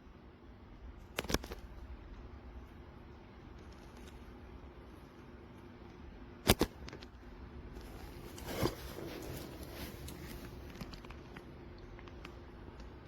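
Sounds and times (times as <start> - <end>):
handling rustle: 7.8 - 11.1.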